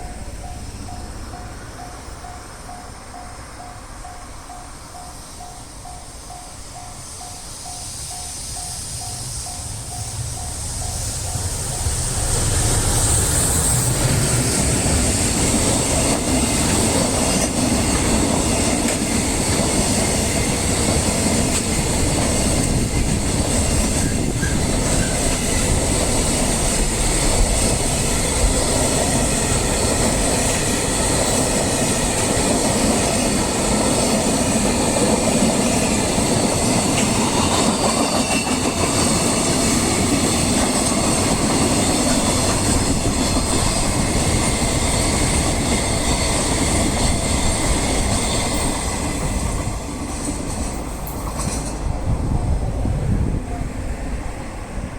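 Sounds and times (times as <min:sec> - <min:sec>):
high-pitched ring: 0:00.0 - 0:12.1
freight train rolling past: 0:00.0 - 0:54.9
wheels clacking over rail joints: 0:09.7 - 0:52.2.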